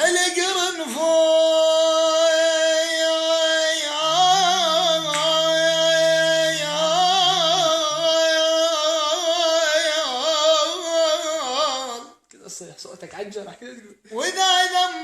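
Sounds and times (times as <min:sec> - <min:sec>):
man singing unaccompanied: 0:00.0 - 0:12.2, 0:13.9 - 0:15.0
low voice droning: 0:03.2 - 0:09.4.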